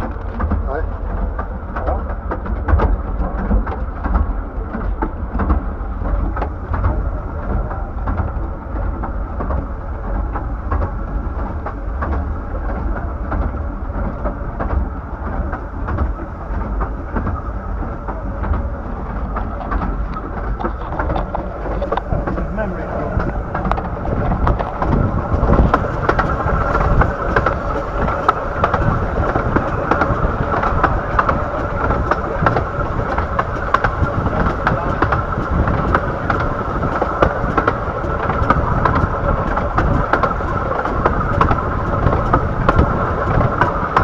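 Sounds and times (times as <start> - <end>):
train wheels rumbling on track: 0.0 - 44.0
irregular clicks and knocks: 19.7 - 44.0.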